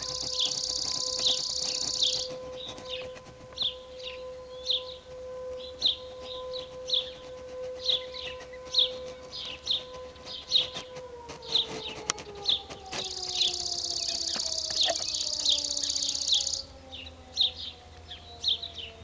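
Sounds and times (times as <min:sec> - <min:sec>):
rapid high buzzing trill: 0:00.0 - 0:02.4
bird chirping: 0:00.0 - 0:05.0, 0:05.6 - 0:19.0
distant siren winding down: 0:00.0 - 0:19.0.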